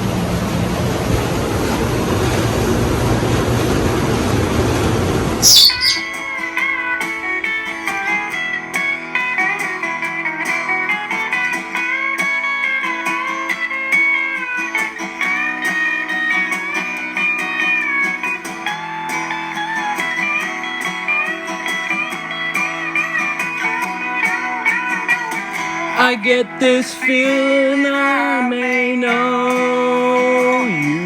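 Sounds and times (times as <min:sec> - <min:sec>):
steady rushing noise: 0:00.0 - 0:05.4
guitar music: 0:05.4 - 0:31.0.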